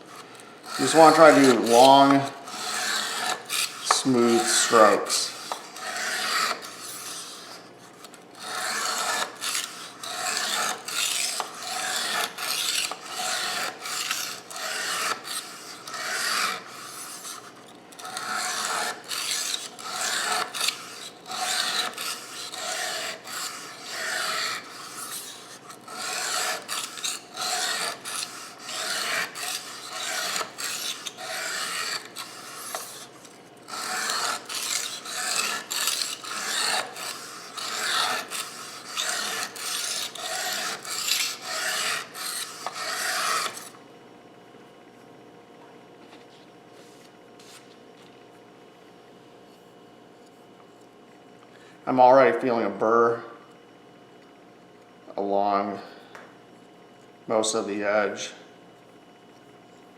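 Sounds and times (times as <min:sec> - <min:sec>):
knife scraping on sharpening stone: 0:00.1 - 0:07.6, 0:08.4 - 0:33.1, 0:33.7 - 0:43.8.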